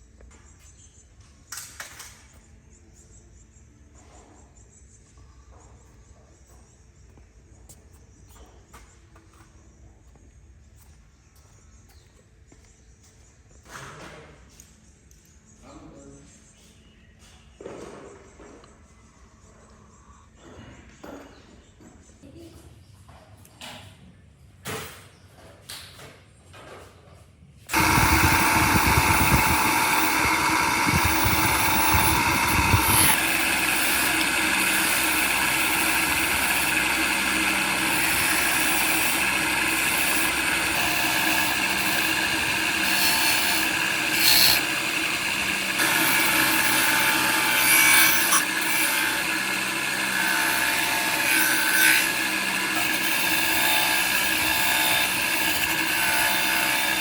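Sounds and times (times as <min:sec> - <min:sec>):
electric power tool running: 0:27.7 - 0:57.0.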